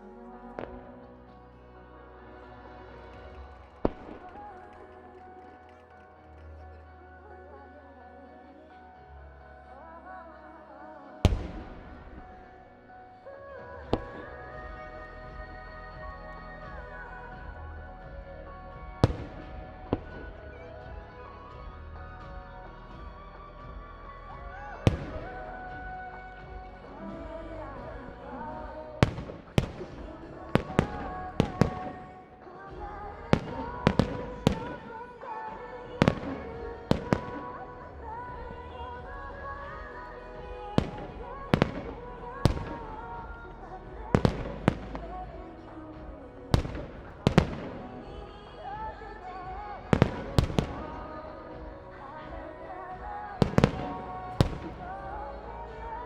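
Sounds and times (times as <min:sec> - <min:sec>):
pop song with singing: 0:00.0 - 0:56.0
fireworks bursting: 0:02.7 - 0:06.1, 0:11.2 - 0:13.0, 0:19.0 - 0:21.0, 0:24.8 - 0:56.0.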